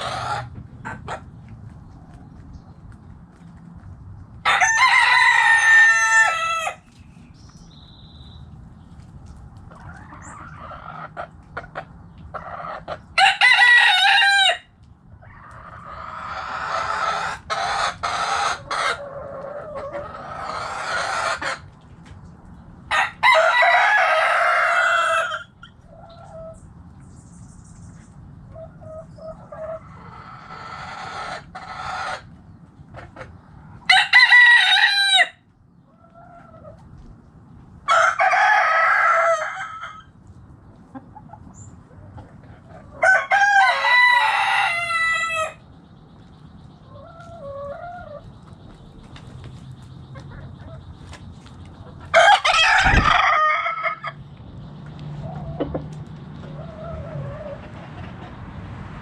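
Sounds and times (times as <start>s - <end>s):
roosters crowing: 0.0s - 1.3s, 4.4s - 7.0s, 9.7s - 21.7s, 22.8s - 26.6s, 33.5s - 36.8s, 37.7s - 40.2s, 42.0s - 45.8s, 46.8s - 48.6s, 51.7s - 54.4s, 55.1s - 59.0s
hens clucking: 0.0s - 7.6s, 8.4s - 59.0s.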